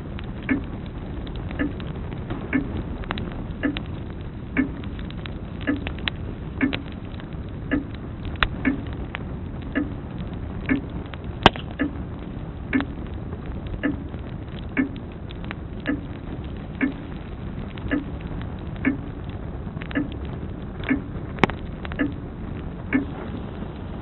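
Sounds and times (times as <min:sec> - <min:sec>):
crackling wood fire: 0:00.0 - 0:24.0
sharp pops from fire: 0:00.0 - 0:24.0
clock ticking: 0:00.4 - 0:00.8, 0:01.5 - 0:01.9, 0:02.5 - 0:02.8, 0:03.6 - 0:03.9, 0:04.6 - 0:05.0, 0:05.6 - 0:07.1, 0:07.7 - 0:09.0, 0:09.7 - 0:10.0, 0:10.6 - 0:12.0, 0:12.7 - 0:13.1, 0:13.8 - 0:15.1, 0:15.8 - 0:18.2, 0:18.8 - 0:19.1, 0:19.8 - 0:22.2, 0:22.9 - 0:23.1.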